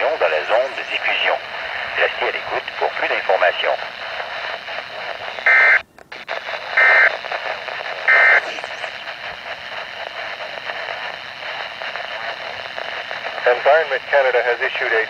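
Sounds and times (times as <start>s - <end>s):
radio static: 0.0s - 15.0s
buzzy digital data bursts: 7.8s - 9.9s.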